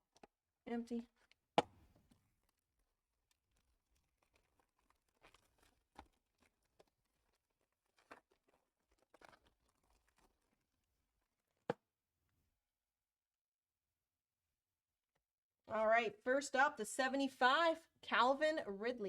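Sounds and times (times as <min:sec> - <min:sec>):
cards and packaging rustling: 0:01.1 - 0:11.8.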